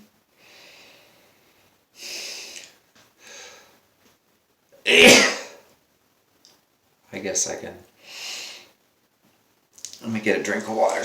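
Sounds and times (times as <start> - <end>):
man breathing in: 0.4 - 3.8
man sneezing loudly: 4.9 - 5.6.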